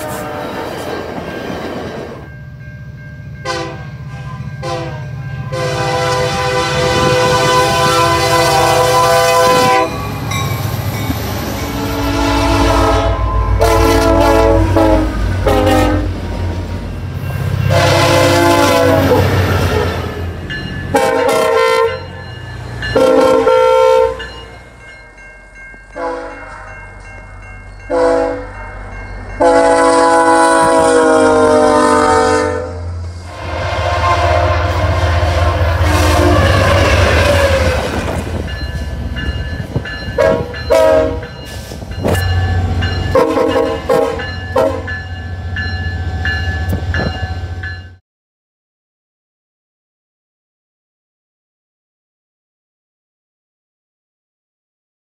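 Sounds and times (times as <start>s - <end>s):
locomotive air horn blasts: 0.0s - 0.8s, 3.4s - 10.1s, 11.6s - 16.2s, 17.7s - 20.2s, 20.9s - 22.1s, 23.0s - 24.2s, 26.0s - 26.8s, 27.9s - 28.7s, 29.4s - 38.0s, 40.2s - 41.4s, 43.1s - 44.9s
train rumble: 0.0s - 48.0s.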